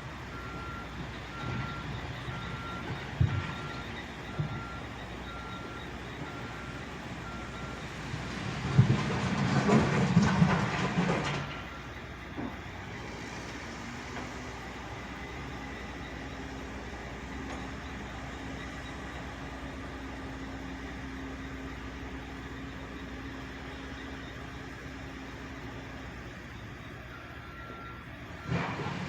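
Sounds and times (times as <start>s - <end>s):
backup alarm beeping: 0.4s - 8.0s
gravel scraping and rattling: 8.2s - 11.7s.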